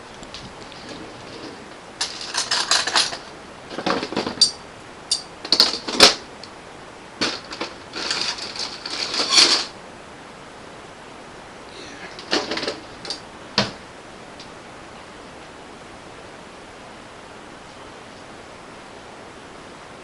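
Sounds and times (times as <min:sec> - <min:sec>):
objects clattering and rattling: 0:00.4 - 0:06.3, 0:07.2 - 0:09.8, 0:12.1 - 0:13.8.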